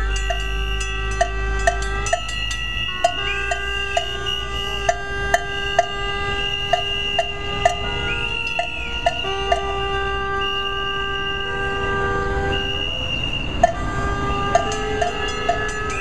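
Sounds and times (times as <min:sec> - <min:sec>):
struck percussion beat: 0:00.0 - 0:06.0, 0:06.7 - 0:09.8, 0:14.6 - 0:16.0
horns blowing long tones: 0:00.0 - 0:16.0.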